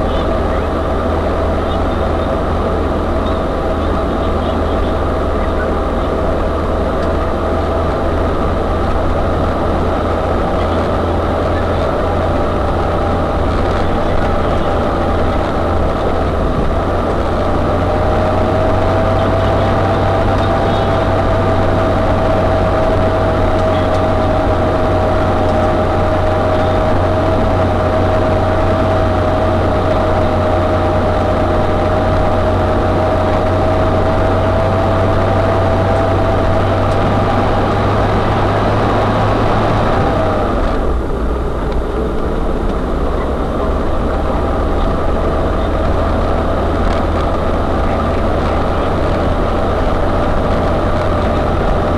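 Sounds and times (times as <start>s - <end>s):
high drivetrain whine: 0.0s - 51.9s
van engine low rumble: 0.0s - 51.9s.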